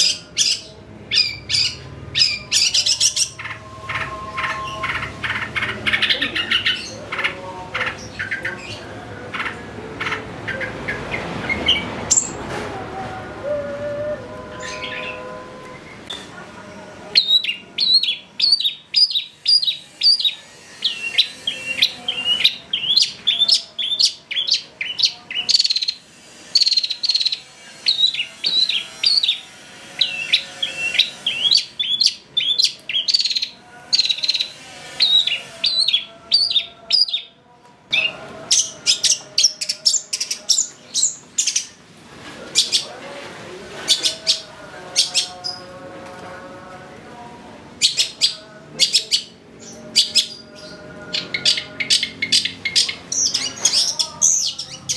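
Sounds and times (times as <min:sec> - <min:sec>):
harsh scratchy bird notes: 0:17.2 - 0:37.2.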